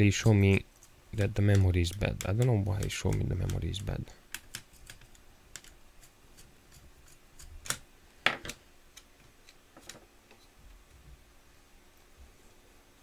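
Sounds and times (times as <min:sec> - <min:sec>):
hands clicking laptop parts: 0:01.2 - 0:05.8, 0:07.6 - 0:07.8.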